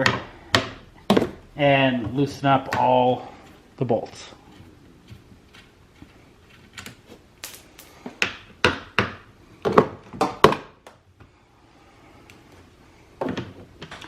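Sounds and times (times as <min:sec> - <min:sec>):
hand tools knocking and clunking: 0:00.0 - 0:03.1.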